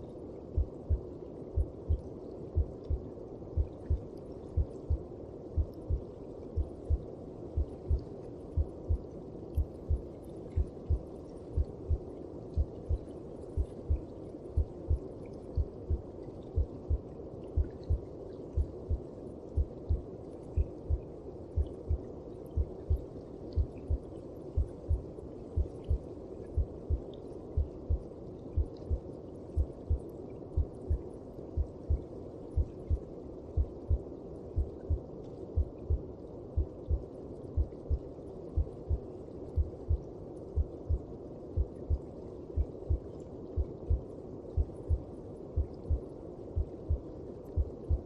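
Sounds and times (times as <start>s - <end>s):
heartbeat thumps: 0.6s - 1.0s, 3.6s - 4.0s, 4.6s - 5.0s, 5.6s - 6.0s, 6.6s - 8.0s, 8.6s - 9.0s, 10.6s - 11.0s, 11.6s - 12.0s, 12.6s - 13.0s, 14.6s - 15.0s, 15.6s - 16.0s, 16.6s - 17.0s, 17.6s - 19.0s, 19.6s - 20.0s, 22.6s - 23.0s, 24.6s - 25.0s, 26.6s - 27.0s, 27.6s - 28.0s, 33.6s - 34.0s, 34.6s - 35.0s, 36.6s - 37.0s, 38.6s - 39.0s, 39.6s - 40.0s, 40.6s - 41.0s, 42.6s - 43.0s, 43.6s - 44.0s, 44.6s - 46.0s, 46.6s - 48.0s.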